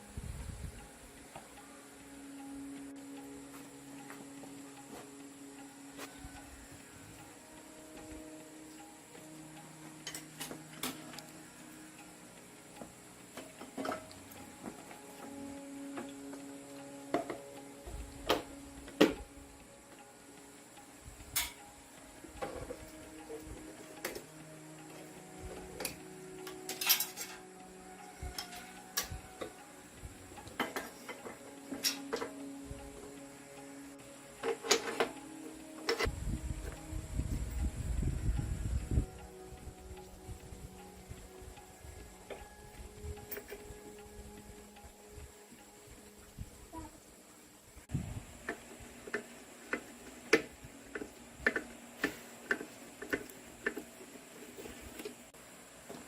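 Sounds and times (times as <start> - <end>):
metallic clicks of hand tools: 7.1 - 36.9, 39.1 - 46.2.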